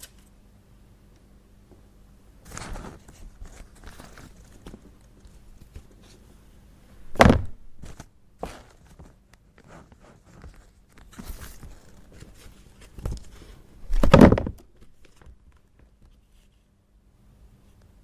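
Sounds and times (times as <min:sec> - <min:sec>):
small knocks and rustles: 0:01.7 - 0:06.3, 0:07.0 - 0:16.7
heavy thunk: 0:07.1 - 0:08.0, 0:13.9 - 0:14.6.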